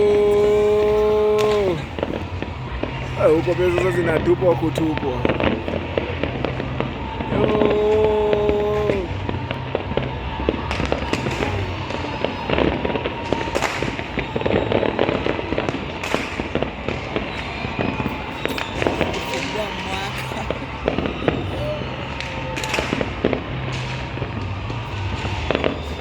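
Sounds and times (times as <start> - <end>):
fireworks crackling and banging: 0.0 - 26.0.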